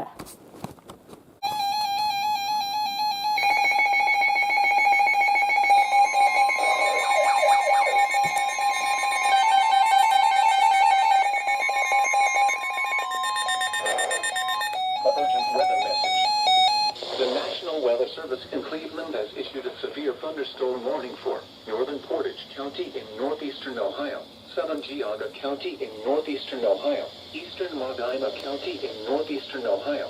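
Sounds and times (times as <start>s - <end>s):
higher steady alarm tone: 1.4s - 17.0s
pulsing electronic alarm tone: 1.4s - 17.0s
alarm warbling between two pitches: 1.5s - 17.0s.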